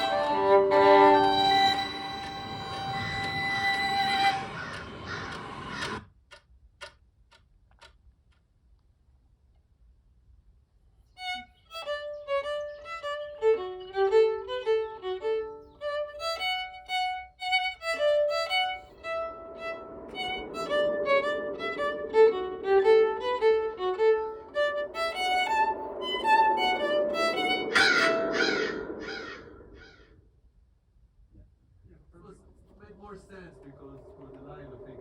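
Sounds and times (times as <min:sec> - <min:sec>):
violin playing: 0:00.0 - 0:05.4, 0:11.2 - 0:29.1.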